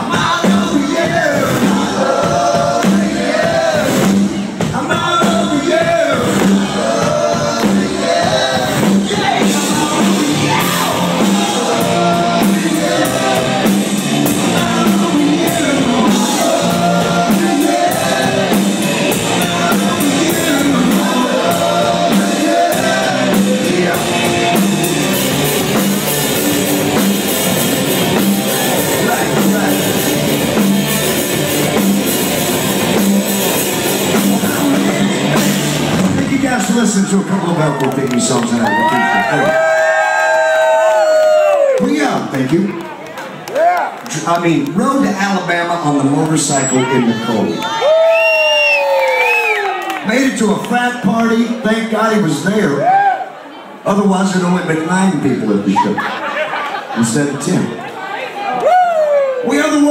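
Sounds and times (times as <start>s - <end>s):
lead vocalist singing: 0.0s - 25.3s, 34.1s - 37.1s
live rock band: 0.0s - 39.9s.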